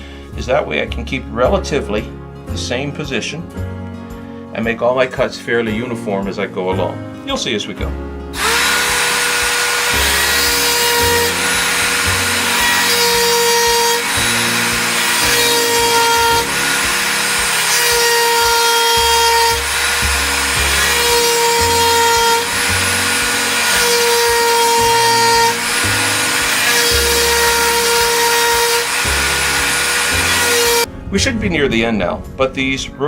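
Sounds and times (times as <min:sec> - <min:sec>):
rotary tool grinding chain: 0:08.4 - 0:30.9.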